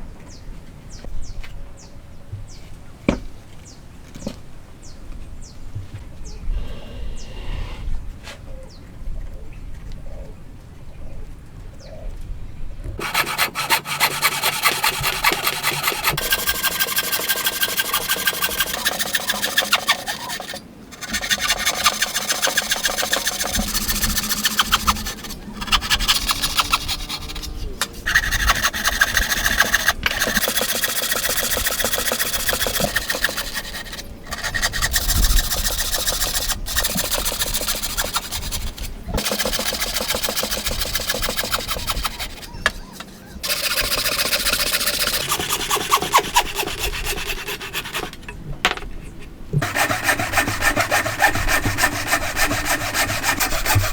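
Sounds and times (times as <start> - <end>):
tool rasping against wood: 13.0 - 48.2, 49.6 - 53.9.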